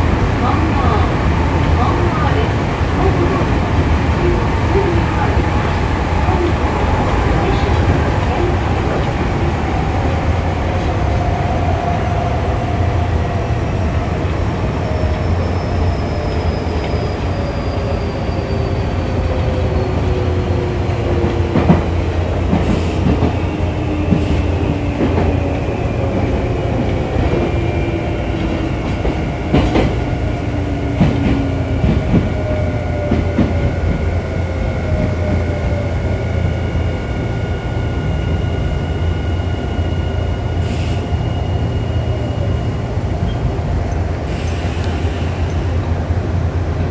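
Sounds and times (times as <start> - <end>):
rail joint clacks: 20.8 - 34.1.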